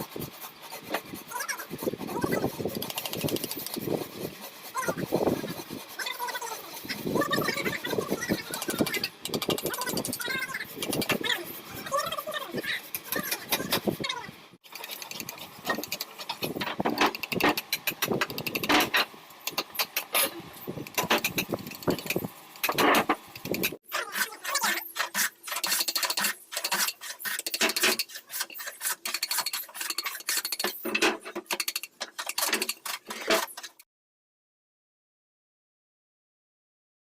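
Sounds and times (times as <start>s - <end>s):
carving tools cutting wood: 0.0s - 33.8s.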